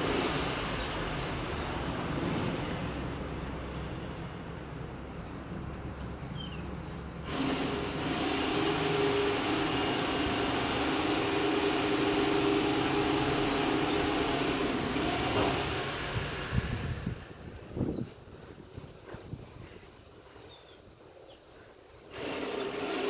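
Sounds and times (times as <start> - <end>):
motor running with hiss: 7.3 - 17.2, 22.1 - 23.0.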